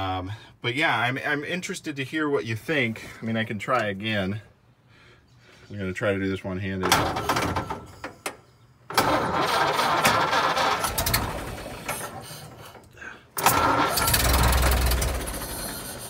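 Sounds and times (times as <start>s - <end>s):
car engine starting and stalling: 8.9s - 16.0s.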